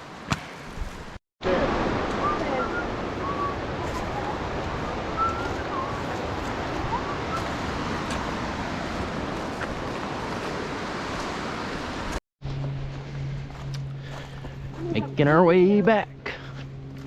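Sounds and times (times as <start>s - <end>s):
creek water rushing: 1.4s - 12.2s.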